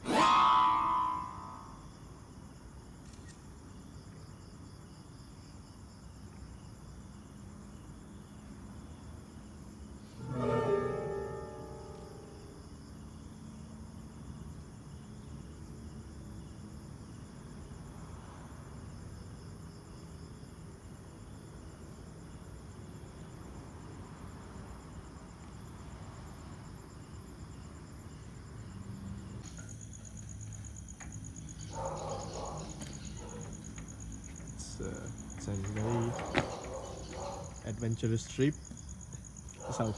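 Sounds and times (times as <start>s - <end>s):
crickets chirping: 0.0s - 39.9s
loud pitched note: 10.2s - 12.5s.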